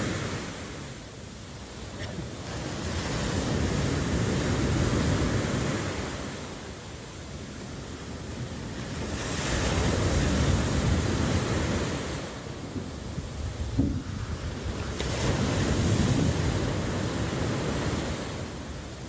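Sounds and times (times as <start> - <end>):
ocean waves breaking: 0.0 - 19.0
wind noise: 0.0 - 19.0.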